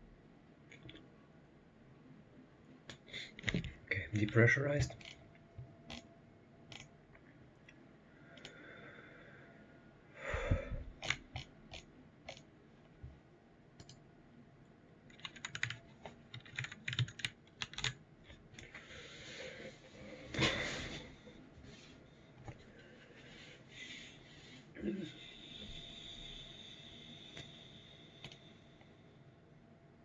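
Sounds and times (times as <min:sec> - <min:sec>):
computer keyboard typing: 0:03.4 - 0:05.2, 0:06.7 - 0:06.9, 0:11.0 - 0:12.5, 0:13.8 - 0:14.0, 0:15.1 - 0:18.7.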